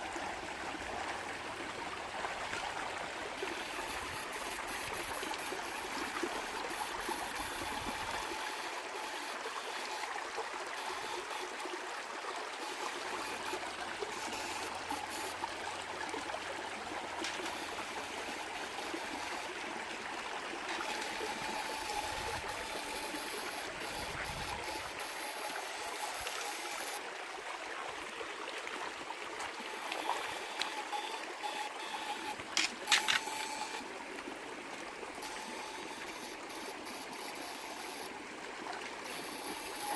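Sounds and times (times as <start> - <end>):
sharp clicks: 31.7 - 33.8.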